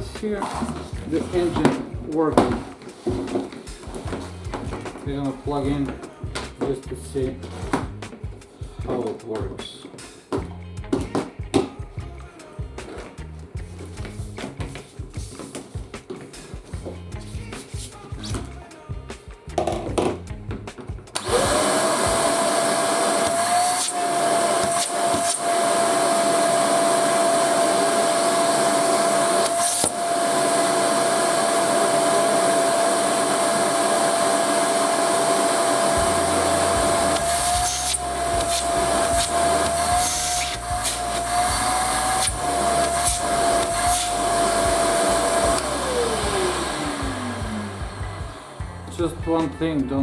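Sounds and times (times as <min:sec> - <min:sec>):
vacuum cleaner motor whine: 0:21.2 - 0:48.9.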